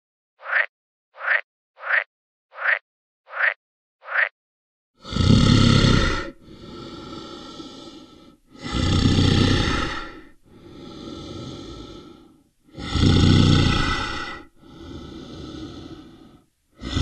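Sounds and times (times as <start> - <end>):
large animal breathing heavily: 5.0 - 17.0.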